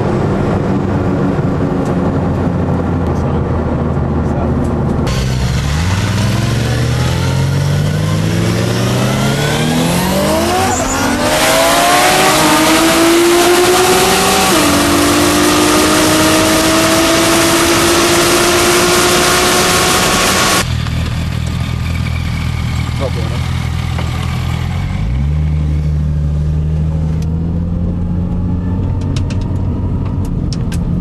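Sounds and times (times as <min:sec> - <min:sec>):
engine accelerating through gears: 0:00.0 - 0:31.0
loud rushing noise: 0:05.0 - 0:20.7.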